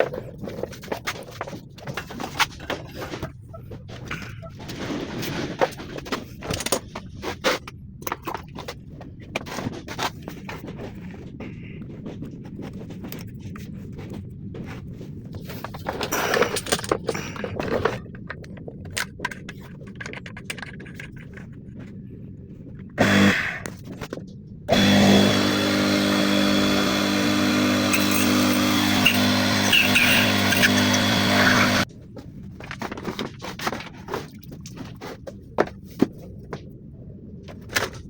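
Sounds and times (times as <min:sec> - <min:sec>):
scraping: 0:24.7 - 0:36.2.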